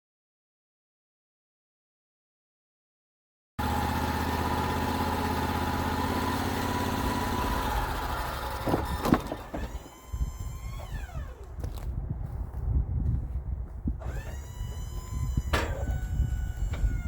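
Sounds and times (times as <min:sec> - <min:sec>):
machine whine winding down: 0:03.6 - 0:11.6, 0:14.0 - 0:17.0
band sawmill running: 0:03.6 - 0:11.8, 0:14.0 - 0:17.0.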